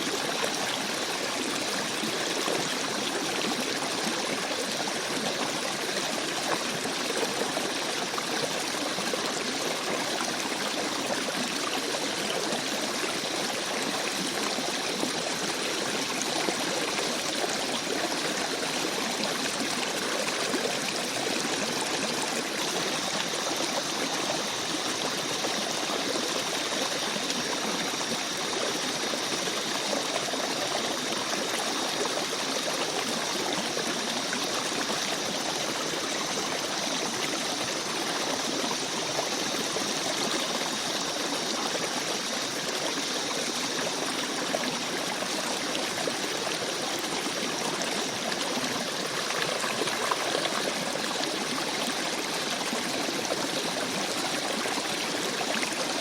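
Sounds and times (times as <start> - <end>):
forest stream babbling: 0.0 - 56.0.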